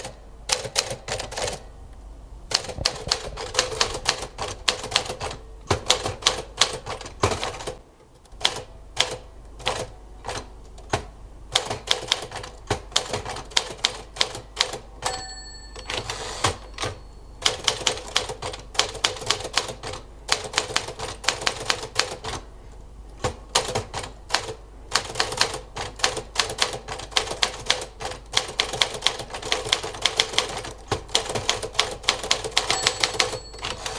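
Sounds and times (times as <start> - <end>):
typewriter keys clacking: 2.5 - 22.4, 23.2 - 33.9
typewriter bell ring: 15.0 - 18.0, 32.5 - 33.9.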